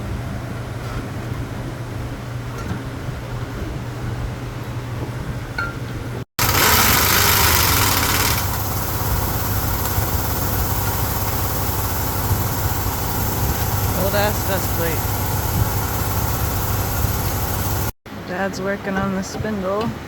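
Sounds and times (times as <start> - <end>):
low mechanical hum: 0.0 - 20.0
loud rushing hiss: 6.4 - 18.0.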